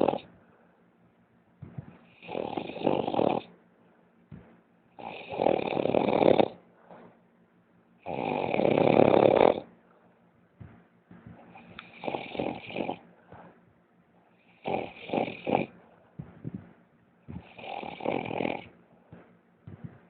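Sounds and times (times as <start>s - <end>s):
man snoring heavily: 0.0s - 0.2s, 2.2s - 3.5s, 5.0s - 6.6s, 8.0s - 9.6s, 11.9s - 13.0s, 14.6s - 15.7s, 17.4s - 18.7s.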